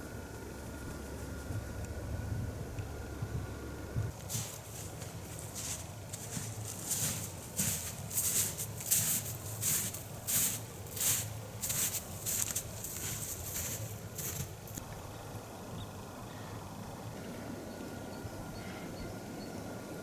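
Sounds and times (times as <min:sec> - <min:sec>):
footsteps on forest ground: 0:04.1 - 0:14.8.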